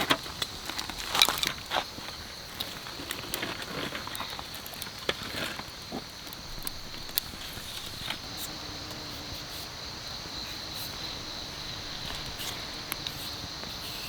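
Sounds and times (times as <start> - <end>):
small clicks and knocks: 0.0 - 8.5
high-pitched insect chirring: 6.5 - 14.0.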